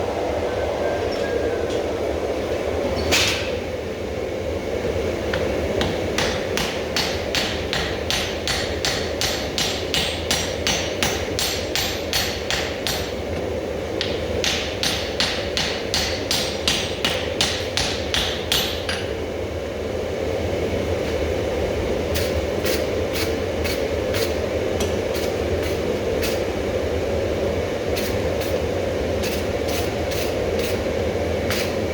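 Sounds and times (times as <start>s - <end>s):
steady background hum: 0.0s - 31.9s
hammer striking steel on anvil: 5.4s - 13.2s, 14.0s - 19.2s.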